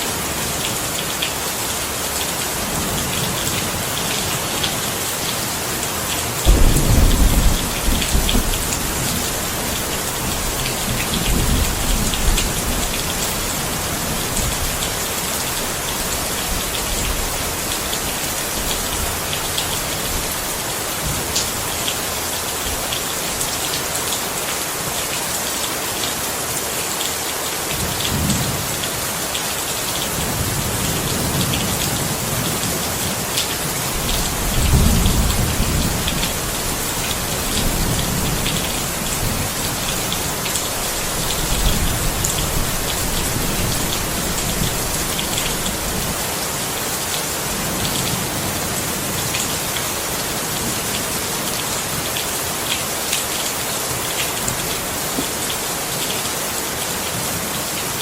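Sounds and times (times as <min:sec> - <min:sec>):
heavy rain falling: 0:00.0 - 0:58.0
thunder rumbling: 0:06.4 - 0:14.8, 0:33.9 - 0:46.2.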